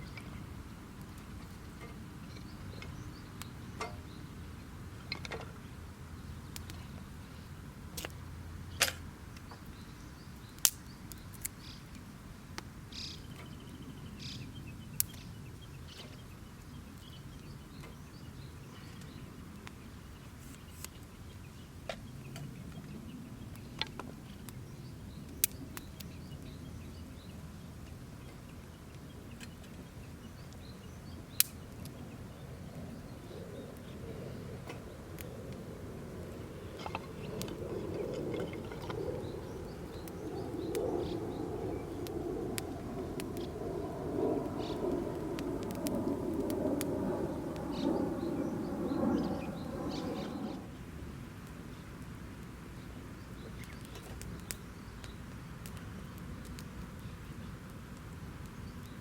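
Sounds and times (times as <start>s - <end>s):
campfire crackling and popping: 10.6s - 11.6s, 23.5s - 26.5s, 28.4s - 50.7s, 53.6s - 59.0s.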